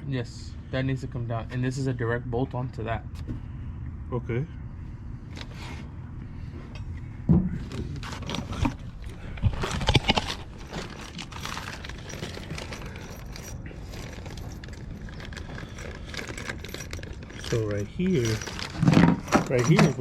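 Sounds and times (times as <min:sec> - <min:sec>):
steady low rumble: 0:00.0 - 0:20.0
metal tools clinking: 0:09.6 - 0:20.0.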